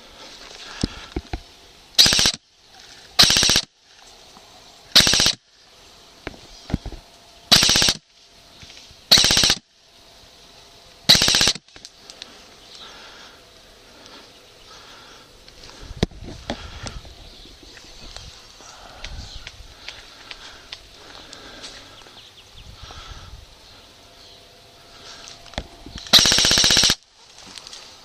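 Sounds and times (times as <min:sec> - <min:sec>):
airsoft rifle bursts: 0:02.0 - 0:02.4, 0:03.2 - 0:03.7, 0:04.9 - 0:05.4, 0:07.5 - 0:08.0, 0:09.1 - 0:09.6, 0:11.1 - 0:11.7, 0:26.1 - 0:27.0.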